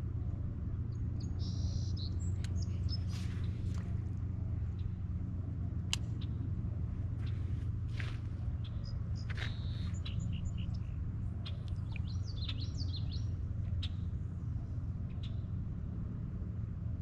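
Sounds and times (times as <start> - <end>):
steady low rumble: 0.0 - 17.0
birds chirping and trilling: 7.2 - 14.1.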